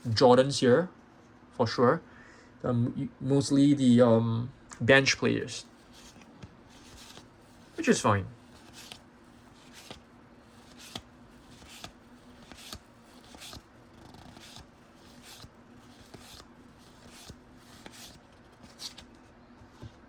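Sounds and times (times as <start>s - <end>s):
faint steady hum: 0.0s - 20.0s
cards sliding and tapping: 5.8s - 20.0s.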